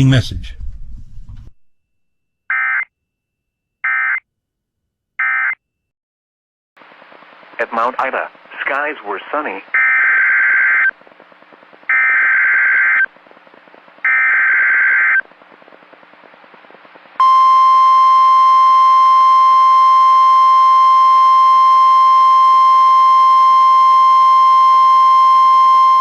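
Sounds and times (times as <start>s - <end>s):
steady single-pitch alert tone: 17.2s - 26.0s.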